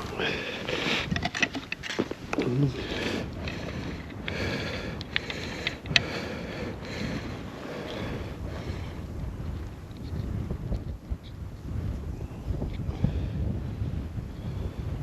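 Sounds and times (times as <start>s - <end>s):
wind buffeting microphone: 0.0s - 15.0s
clicks and knocks of gear handled: 1.0s - 2.6s.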